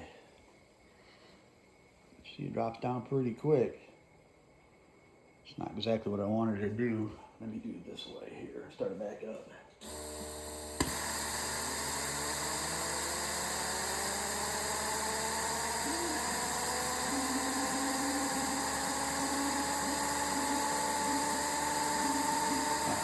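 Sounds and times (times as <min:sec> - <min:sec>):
model jet engine whine rising: 0:09.8 - 0:23.0.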